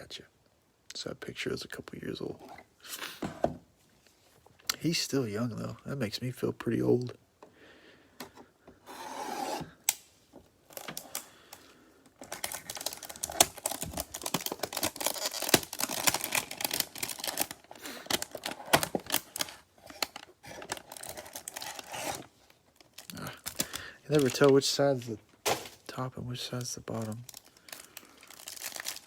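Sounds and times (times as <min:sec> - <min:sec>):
cards and packaging rustling: 0:10.3 - 0:29.0.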